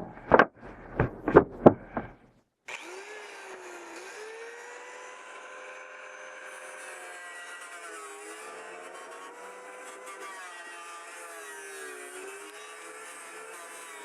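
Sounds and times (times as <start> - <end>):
loud knocks: 0.0 - 2.2.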